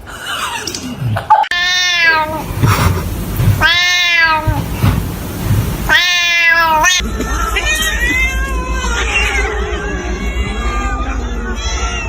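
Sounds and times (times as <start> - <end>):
cat meowing: 1.4 - 4.8, 5.9 - 7.0.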